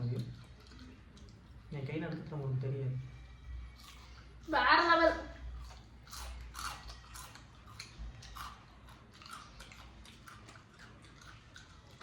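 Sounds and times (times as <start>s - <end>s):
person chewing crispy snacks: 5.4s - 12.0s.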